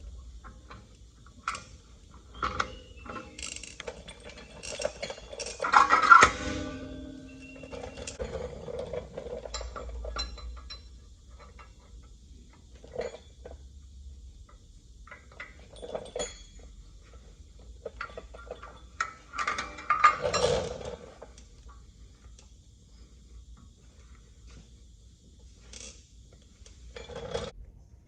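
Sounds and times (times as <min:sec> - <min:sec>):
metal tools clinking and knocking: 0:00.4 - 0:12.1, 0:15.1 - 0:16.9, 0:17.8 - 0:21.3
clattering of metal parts: 0:00.4 - 0:13.6, 0:15.1 - 0:21.8, 0:26.7 - 0:27.5.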